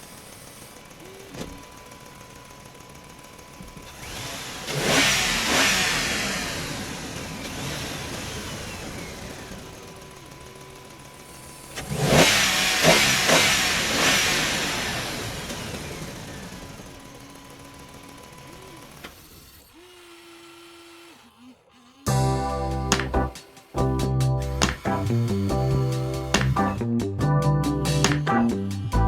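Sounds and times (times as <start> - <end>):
toy motor whining: 0.0 - 26.9, 27.7 - 29.0.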